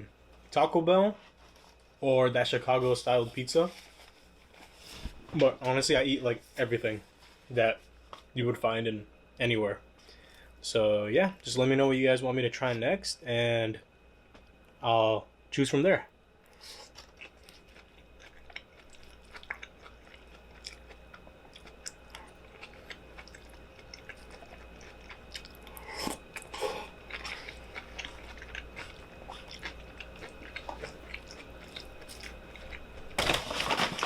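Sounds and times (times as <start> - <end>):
person chewing food: 16.5 - 33.2.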